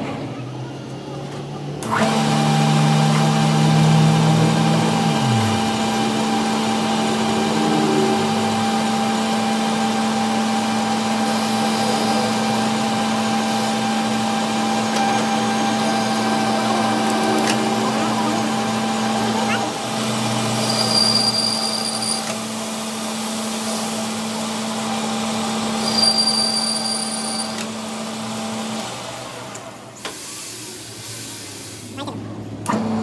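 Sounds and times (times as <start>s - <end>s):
electric motor humming and hissing: 1.8s - 10.6s, 11.2s - 20.8s
low tone dropping in pitch: 2.1s - 9.3s.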